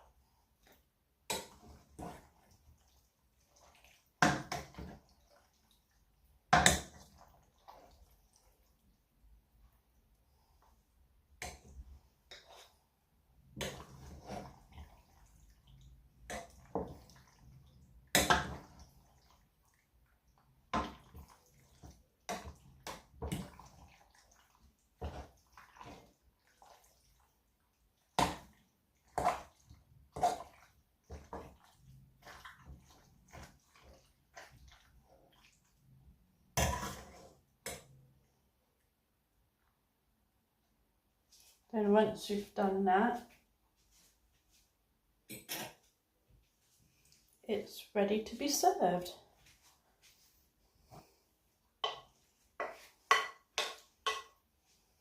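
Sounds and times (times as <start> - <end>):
wet splashing: 0.6 - 9.0, 13.4 - 37.4.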